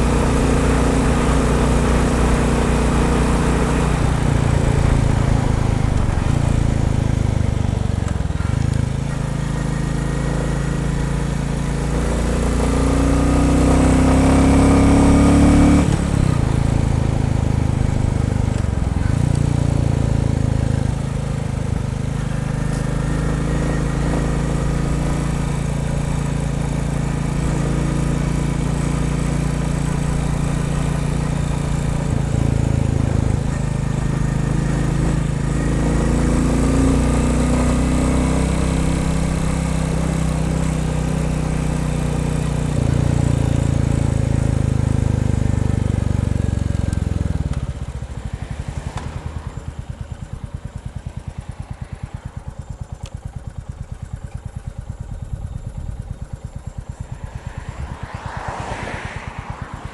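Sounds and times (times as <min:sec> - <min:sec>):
motorcycle engine running under load: 0:00.0 - 0:59.9
engine idling with slow thumps: 0:04.0 - 0:09.9, 0:15.9 - 0:35.4, 0:39.0 - 0:59.9.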